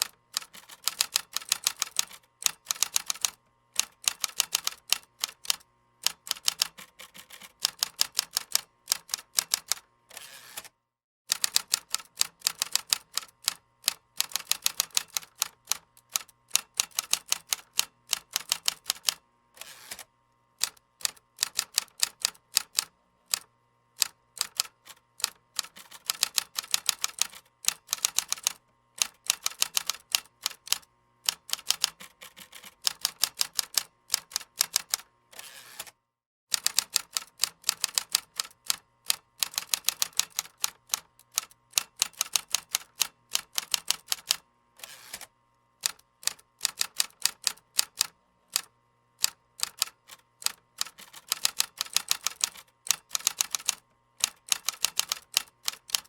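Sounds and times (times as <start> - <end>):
keyboard typing clicks: 0.4 - 9.8, 45.9 - 56.0.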